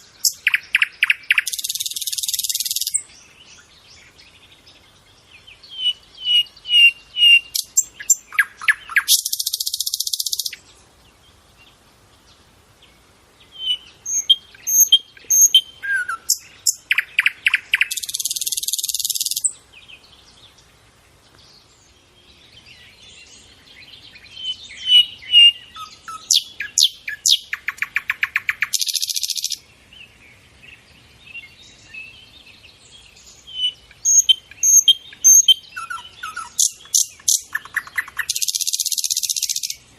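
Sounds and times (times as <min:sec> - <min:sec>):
nightingale singing: 0:00.0 - 0:39.9.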